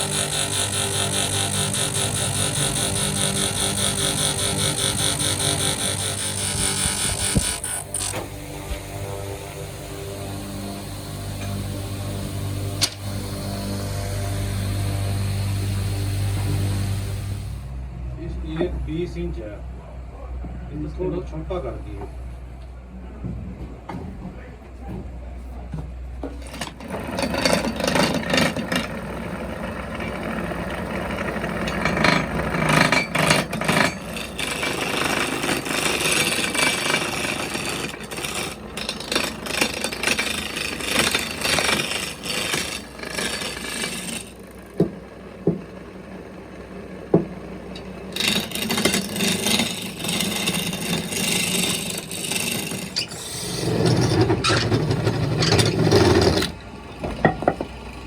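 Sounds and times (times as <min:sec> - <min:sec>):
hand tool rasping on wood: 0:00.0 - 0:08.4, 0:31.2 - 0:44.4, 0:48.2 - 0:56.5.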